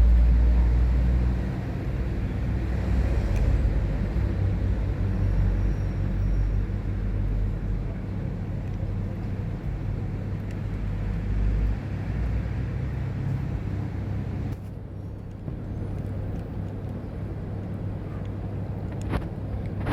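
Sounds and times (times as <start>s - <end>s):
vehicle engine rumbling: 0.0s - 19.9s.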